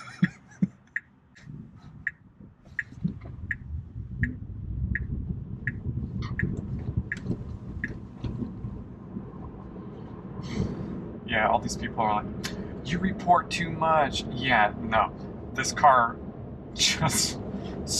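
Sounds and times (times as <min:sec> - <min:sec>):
turn signal ticking: 0:00.0 - 0:10.3
low road rumble: 0:00.0 - 0:17.9.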